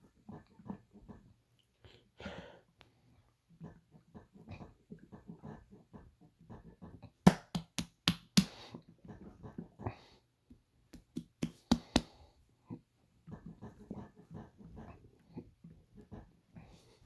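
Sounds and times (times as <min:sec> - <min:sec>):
stomach growling and gurgling: 0:03.5 - 0:07.1.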